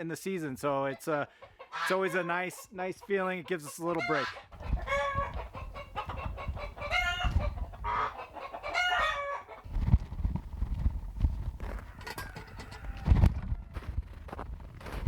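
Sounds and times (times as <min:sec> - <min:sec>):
hens squawking: 0:00.8 - 0:09.7.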